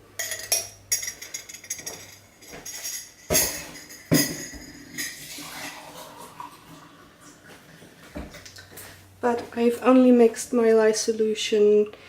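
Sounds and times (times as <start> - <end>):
kitchen utensils clinking: 0.2 - 6.0.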